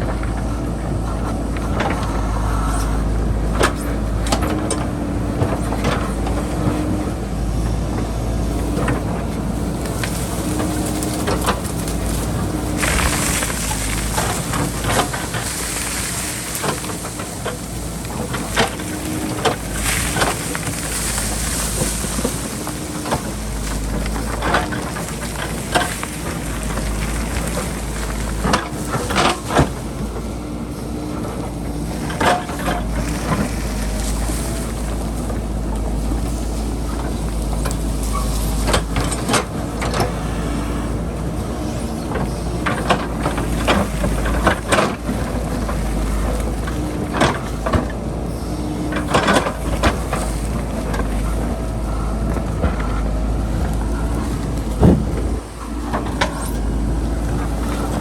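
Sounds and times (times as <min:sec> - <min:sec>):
diesel engine running under load: 0:00.0 - 0:58.0
bucket knocking and scraping soil: 0:09.9 - 0:29.8, 0:52.3 - 0:56.7.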